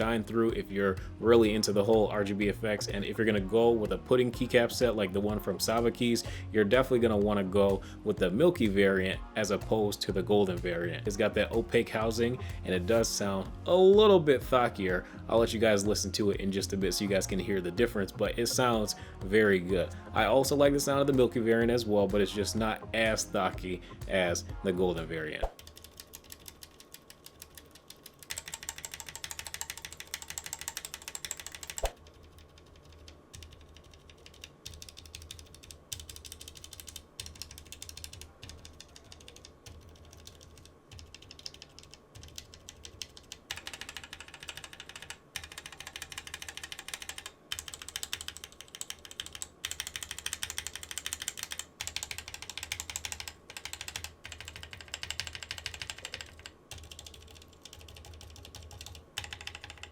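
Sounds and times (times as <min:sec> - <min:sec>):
keyboard typing: 0:25.4 - 0:59.9.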